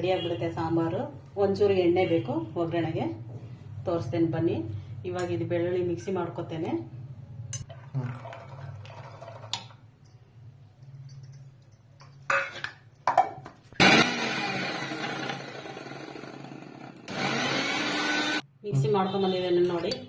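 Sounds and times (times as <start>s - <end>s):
mixer grinder motor grinding: 13.8s - 18.4s.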